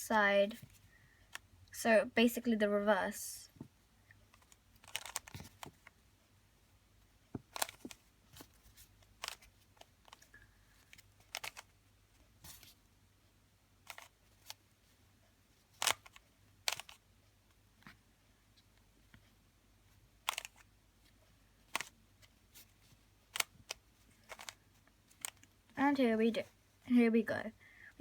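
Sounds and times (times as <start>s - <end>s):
puzzle cube layers clicking: 4.3s - 5.9s, 7.4s - 8.1s, 9.1s - 10.3s, 11.0s - 11.7s, 13.8s - 14.6s, 15.8s - 17.0s, 20.2s - 20.7s, 21.7s - 22.0s, 23.3s - 25.6s.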